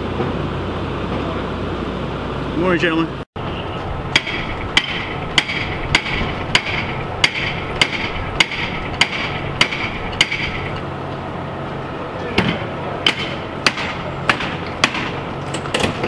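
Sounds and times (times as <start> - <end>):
hammer strikes ringing: 4.1 - 10.9, 12.3 - 15.2.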